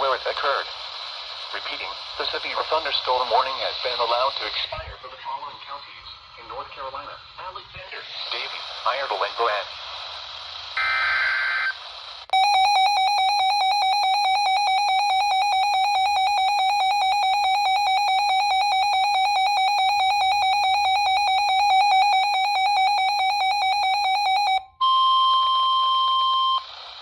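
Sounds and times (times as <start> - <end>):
screeching digital data burst: 10.7 - 24.6
pulsing buzzy electronic beep: 10.8 - 11.8, 12.4 - 24.6.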